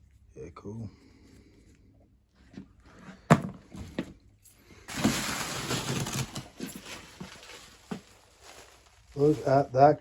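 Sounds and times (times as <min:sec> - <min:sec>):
packaging rustling and scraping: 0:04.8 - 0:10.0.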